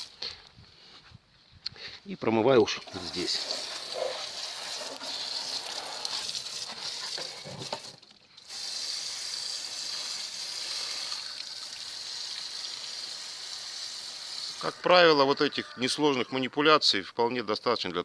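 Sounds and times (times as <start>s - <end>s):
water jet spraying: 2.8s - 16.3s.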